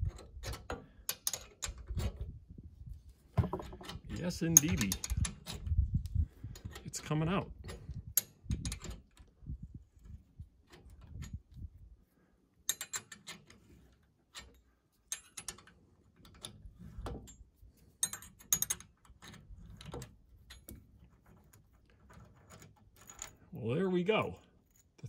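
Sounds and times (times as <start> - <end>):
metallic clicks and scrapes: 0.0 - 2.4, 3.4 - 11.8, 12.6 - 23.5, 24.5 - 25.0.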